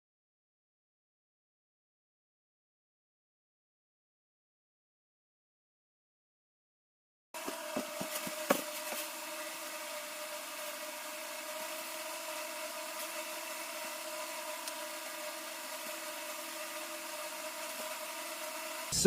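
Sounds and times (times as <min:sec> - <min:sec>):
motor humming: 0:07.4 - 0:19.0.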